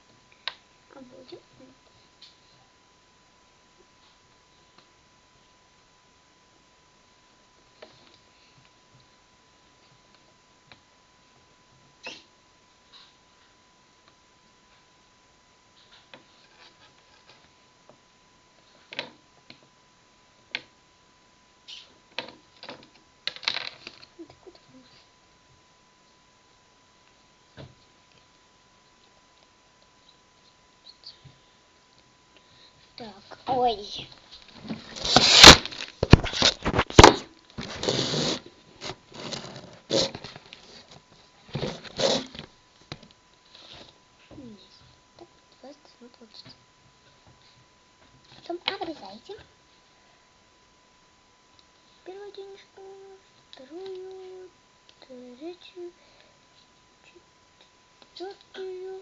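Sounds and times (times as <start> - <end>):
paper rustling: 34.6 - 42.4.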